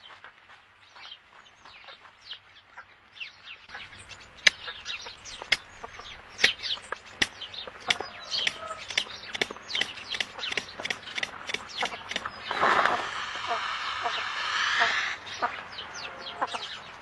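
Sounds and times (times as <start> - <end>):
chickens clucking and chirping: 3.7 - 17.0
sharp clicks: 4.4 - 12.5.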